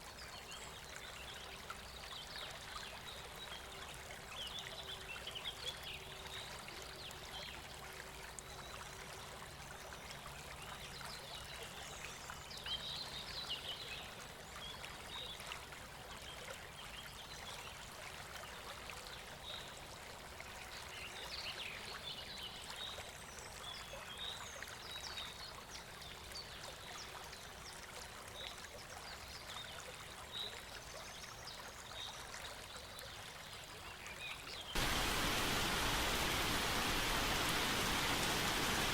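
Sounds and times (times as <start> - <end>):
river water flowing: 34.6 - 38.9.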